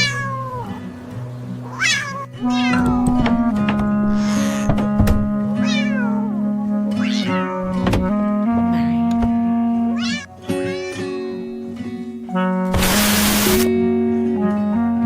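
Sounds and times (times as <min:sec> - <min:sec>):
cat meowing: 0:00.0 - 0:00.8, 0:01.6 - 0:03.2, 0:04.1 - 0:04.7, 0:05.5 - 0:06.4, 0:07.0 - 0:07.8, 0:09.9 - 0:11.6
background music: 0:00.0 - 0:15.0.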